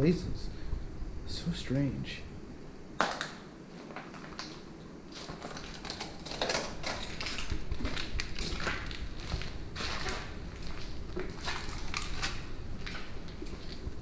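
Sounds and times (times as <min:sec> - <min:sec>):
footsteps crunching on paint flakes: 0:03.0 - 0:14.0.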